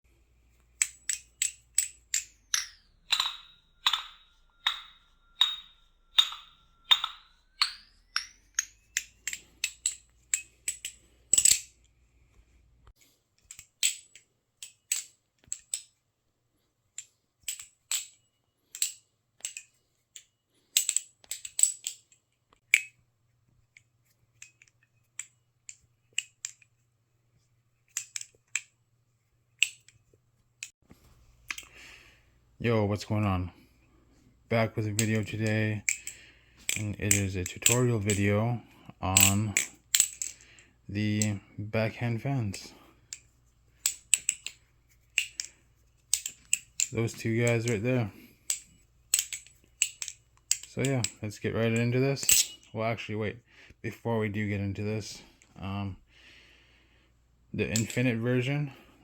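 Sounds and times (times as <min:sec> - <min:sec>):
balisong trainer clacking: 0:00.7 - 0:11.7.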